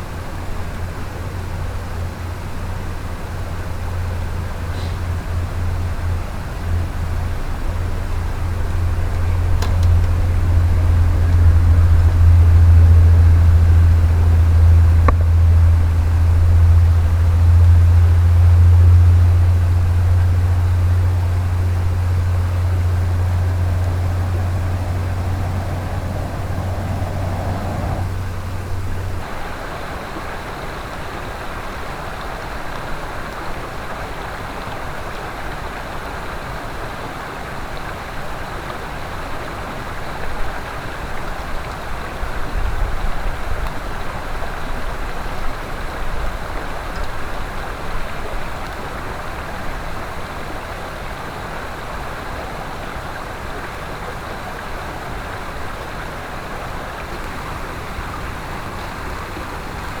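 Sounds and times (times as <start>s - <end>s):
stream rushing over rocks: 0.0s - 60.0s
low rumbles and bumps: 0.1s - 29.3s.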